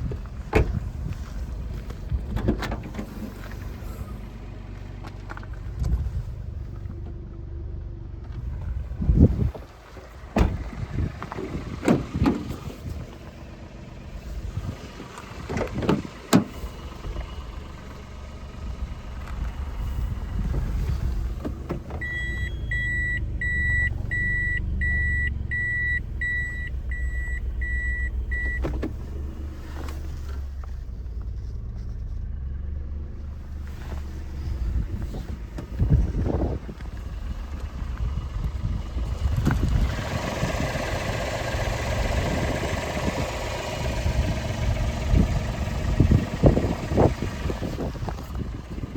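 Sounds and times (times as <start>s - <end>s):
car engine rumbling: 0.0s - 48.9s
thump: 10.3s - 10.7s
car warning chime beeping: 22.0s - 28.7s.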